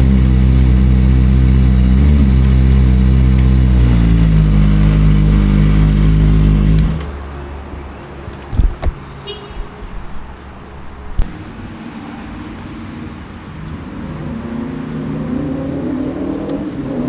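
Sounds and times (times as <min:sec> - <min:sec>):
motorcycle engine accelerating: 0:00.0 - 0:07.3.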